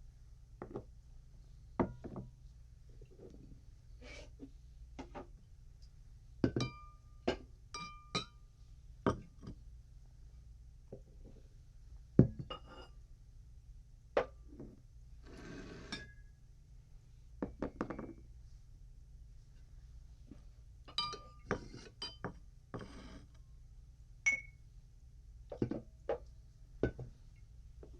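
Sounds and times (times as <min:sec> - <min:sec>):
glass objects clinking: 0:06.4 - 0:08.4, 0:20.9 - 0:23.0, 0:24.3 - 0:24.6.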